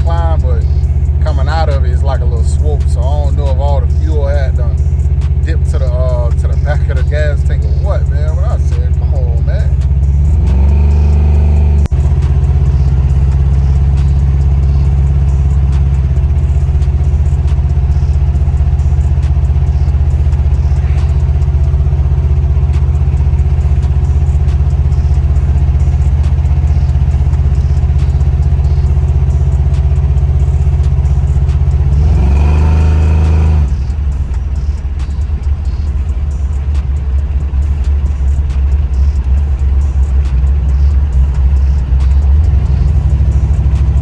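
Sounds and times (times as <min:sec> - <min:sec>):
engine and exhaust drone: 0:00.0 - 0:44.0.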